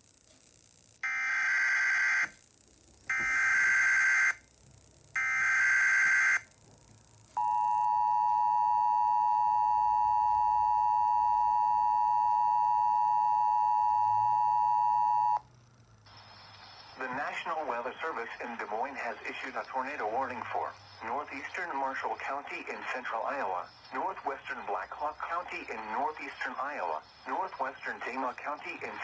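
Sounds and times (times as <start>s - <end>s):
two-tone attention signal: 5.2s - 6.4s.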